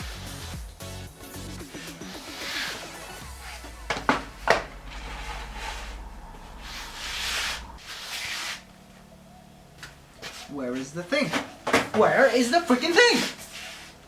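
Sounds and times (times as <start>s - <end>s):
wood rubbing or scraping: 1.4s - 8.7s.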